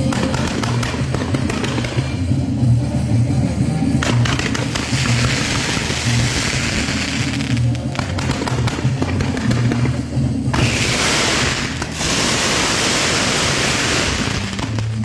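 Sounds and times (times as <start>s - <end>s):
fireworks crackling pops: 0.0s - 2.3s, 4.0s - 15.0s
hiss of burning pyrotechnics: 4.1s - 9.8s, 10.6s - 15.0s.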